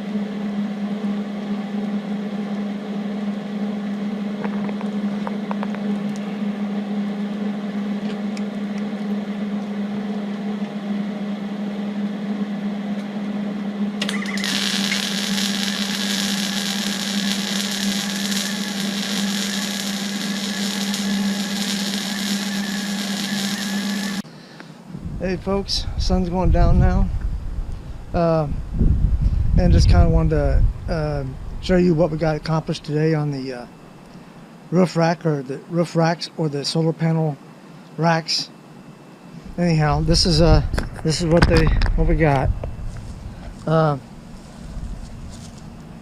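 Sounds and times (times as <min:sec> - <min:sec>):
welding machine hum: 0:00.0 - 0:10.7, 0:13.4 - 0:24.3
welding arc hissing: 0:14.0 - 0:24.2.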